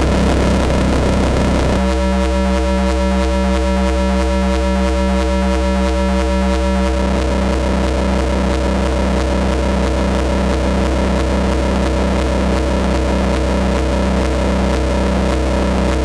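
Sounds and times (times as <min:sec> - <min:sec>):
pulsing synth tone: 0:00.0 - 0:02.7
synthesizer drone: 0:00.0 - 0:16.0.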